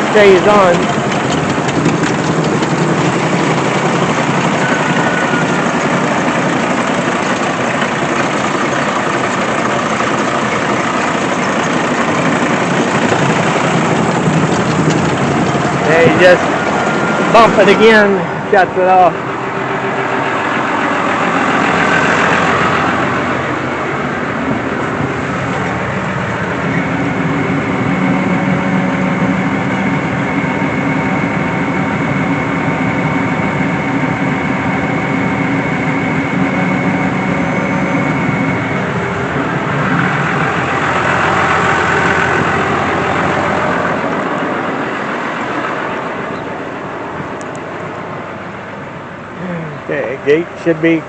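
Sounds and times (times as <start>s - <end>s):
baler machinery noise: 0.0s - 51.0s
steady whine: 0.0s - 51.0s
tractor engine running: 0.0s - 51.0s.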